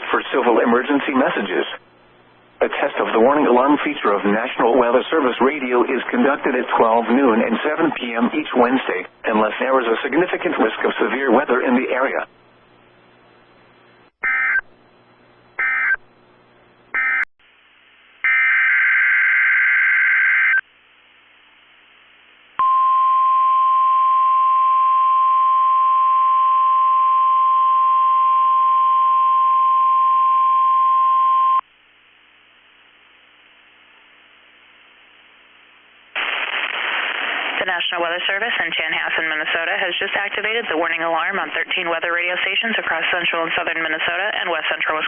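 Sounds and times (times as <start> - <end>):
steady warning alarm tone: 15.6 - 16.0, 17.0 - 17.3, 18.2 - 20.6.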